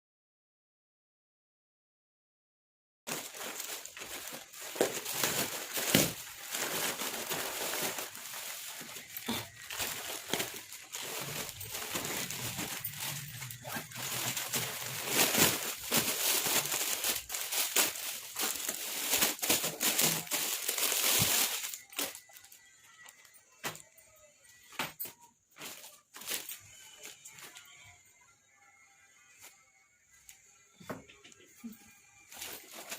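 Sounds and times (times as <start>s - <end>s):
packaging crinkling: 3.1s - 23.8s, 32.3s - 32.9s.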